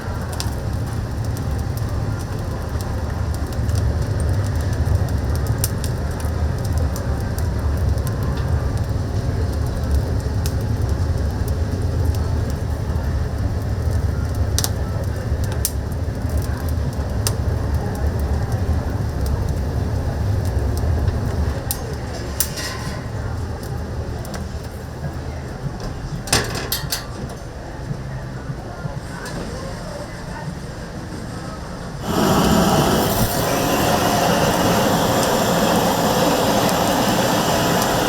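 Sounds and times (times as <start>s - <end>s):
steady low rumble: 0.0s - 22.4s, 32.0s - 38.0s
firewood fire crackling: 0.0s - 25.6s, 32.0s - 38.0s
sharp pops: 32.0s - 38.0s.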